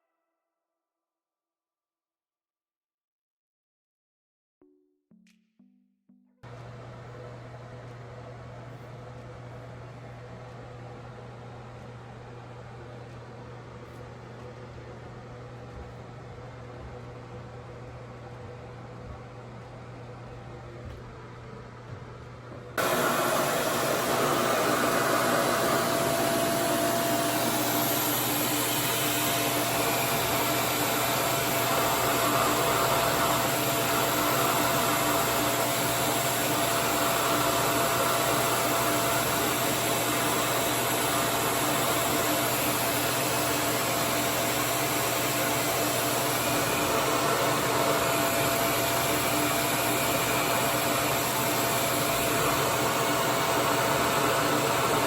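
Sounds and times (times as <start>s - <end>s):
faint motor whine: 6.4s - 55.0s
hair dryer suction airflow: 22.8s - 55.0s.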